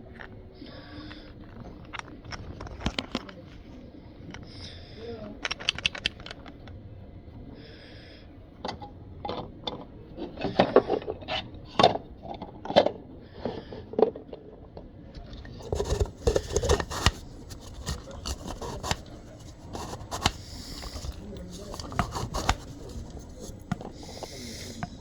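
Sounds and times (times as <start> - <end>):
objects knocking and scraping: 15.6 - 25.0.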